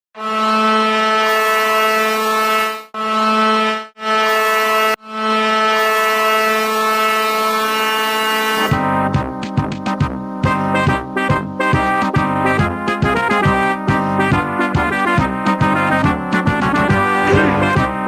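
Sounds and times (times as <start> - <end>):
hockey goal horn blasts: 0.2 - 9.1, 16.8 - 18.0.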